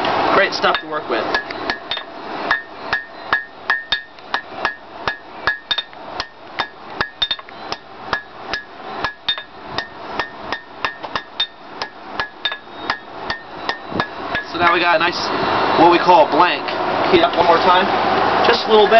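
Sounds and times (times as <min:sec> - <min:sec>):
hammer striking steel on anvil: 0:00.6 - 0:14.8.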